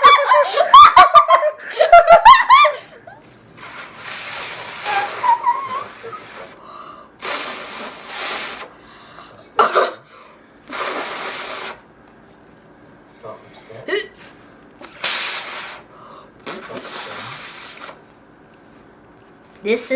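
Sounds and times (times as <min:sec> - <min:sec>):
breathy puffs of air: 0:03.2 - 0:09.5, 0:10.1 - 0:11.8, 0:14.8 - 0:18.0.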